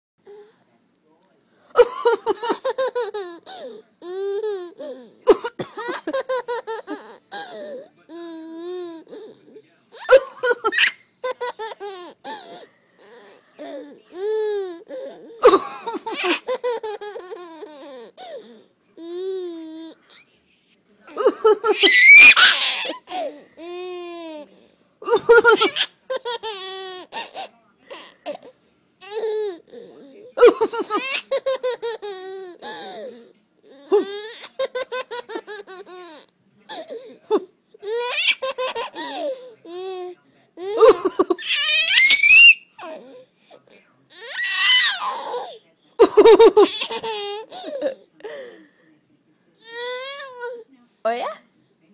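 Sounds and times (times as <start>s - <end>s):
baby laughing: 1.8s - 7.7s, 10.0s - 13.3s, 14.2s - 18.2s, 21.2s - 23.3s, 25.0s - 28.4s, 30.4s - 32.9s, 37.3s - 39.8s
baby squealing: 10.0s - 13.4s, 21.7s - 24.3s, 41.4s - 43.0s, 44.2s - 45.6s.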